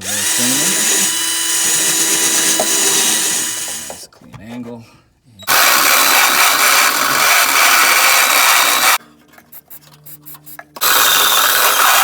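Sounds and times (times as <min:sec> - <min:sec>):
power tool grinding into steel: 0:00.0 - 0:04.0, 0:05.5 - 0:09.0, 0:10.8 - 0:12.0.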